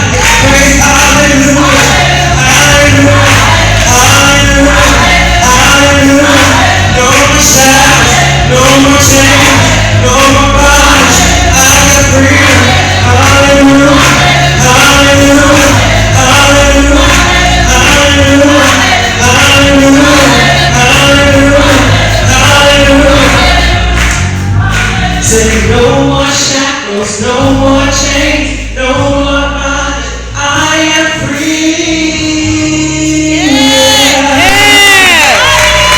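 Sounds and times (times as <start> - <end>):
gospel choir singing: 0.0 - 35.9.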